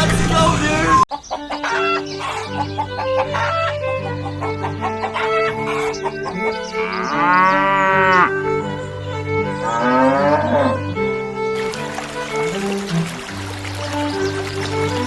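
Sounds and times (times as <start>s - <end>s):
background music: 1.6s - 15.0s.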